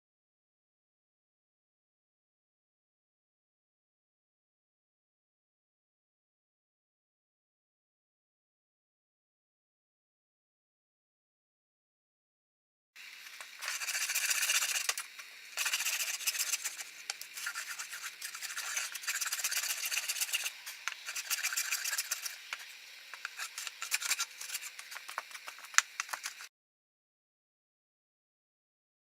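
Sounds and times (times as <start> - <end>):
hand tool rasping wood: 13.6 - 26.5.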